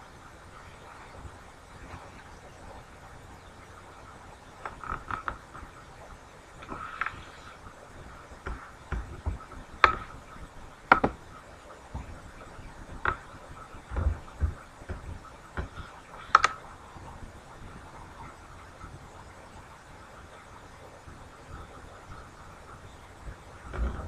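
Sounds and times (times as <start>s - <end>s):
soft low thumps: 7.6s - 19.2s.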